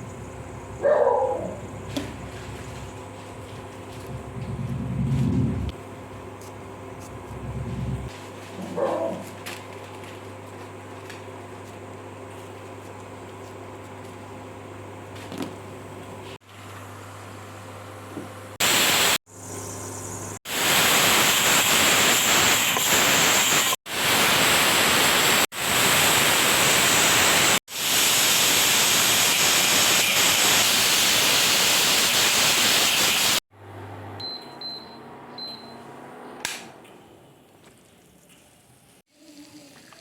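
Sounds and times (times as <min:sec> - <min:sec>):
pressure cooker hissing steam: 0:18.6 - 0:19.2, 0:20.5 - 0:33.4.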